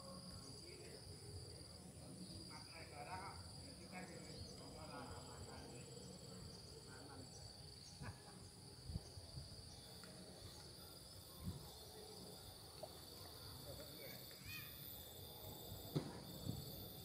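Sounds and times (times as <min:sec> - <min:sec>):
faint insect chirring: 0:00.0 - 0:17.0.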